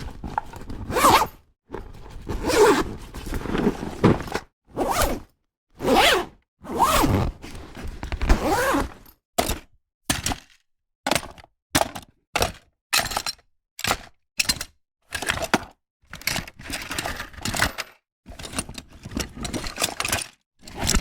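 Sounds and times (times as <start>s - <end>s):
bag fabric rustling: 0.1s - 5.2s, 5.8s - 9.1s
zipper pulled back and forth: 0.2s - 9.1s.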